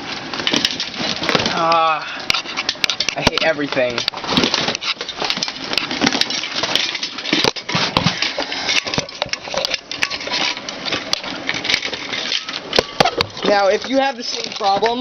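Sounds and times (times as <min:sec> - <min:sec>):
hard objects clattering: 0:00.0 - 0:15.0.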